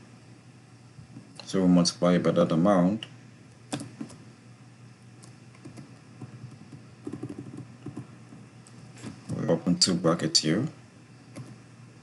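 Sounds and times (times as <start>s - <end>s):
faint low hum: 0.0s - 12.0s
computer keyboard keystrokes: 5.2s - 8.1s, 11.3s - 11.6s.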